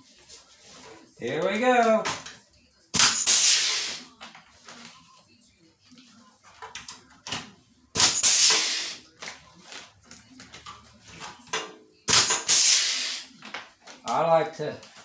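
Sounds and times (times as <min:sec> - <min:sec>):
rivet gun air hiss: 0:03.0 - 0:04.1, 0:08.0 - 0:09.0, 0:12.1 - 0:13.3.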